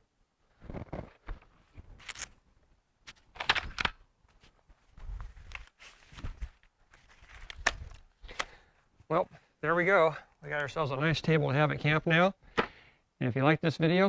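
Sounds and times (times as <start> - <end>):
rustling: 3.0 - 8.4.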